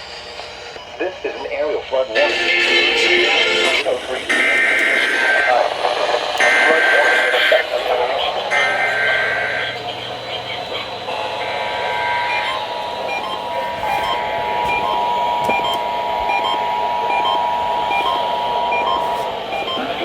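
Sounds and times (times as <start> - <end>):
digital data squawk: 2.3 - 19.8
two-tone attention signal: 6.4 - 7.7, 11.1 - 20.0.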